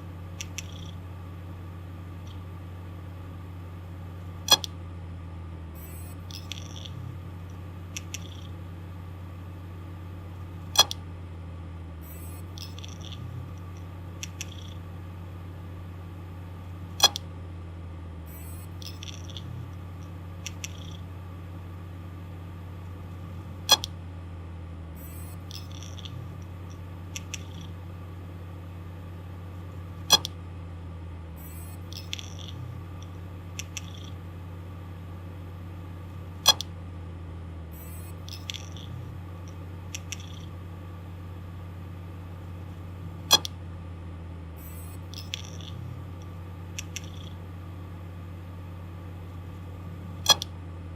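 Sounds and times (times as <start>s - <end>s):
hard disk motor humming: 0.0s - 50.9s
hard disk heads clicking: 30.1s - 30.4s.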